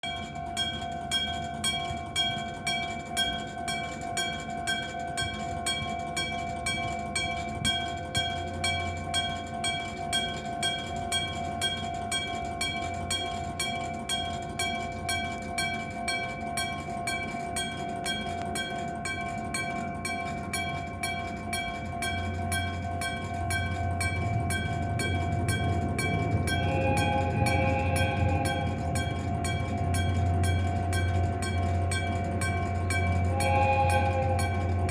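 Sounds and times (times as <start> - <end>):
low rumble: 22.3 - 34.9.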